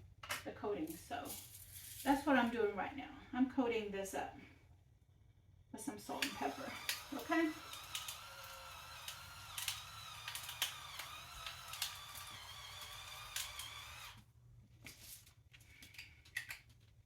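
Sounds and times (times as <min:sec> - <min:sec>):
hands handling food clicks: 0:15.5 - 0:17.0.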